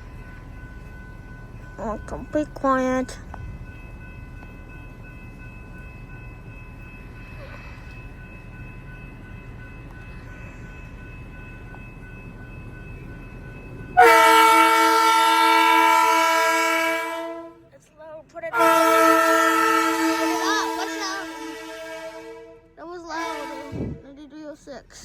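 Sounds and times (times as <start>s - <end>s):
electric train rumble: 0.0s - 25.0s
train horn blast: 14.0s - 17.7s, 18.5s - 24.0s.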